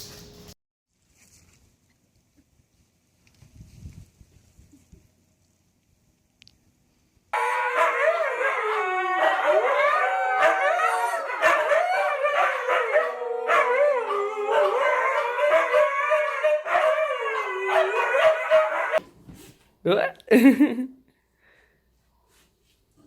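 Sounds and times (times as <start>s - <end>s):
dogs howling together: 7.4s - 19.0s.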